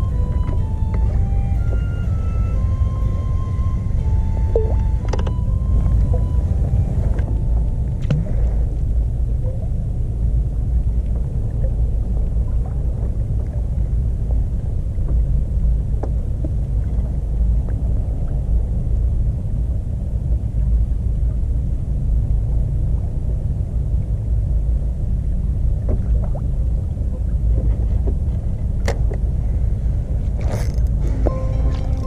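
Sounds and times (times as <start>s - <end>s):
outboard motor running: 0.0s - 9.2s, 27.5s - 32.0s.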